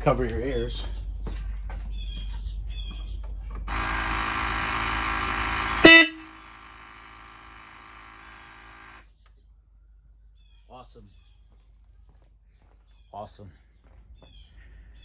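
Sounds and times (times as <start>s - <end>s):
air horn blast: 3.7s - 9.0s.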